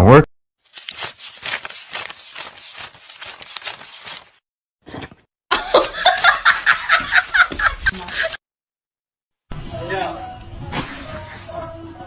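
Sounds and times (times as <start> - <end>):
person laughing hard: 5.5 - 8.4.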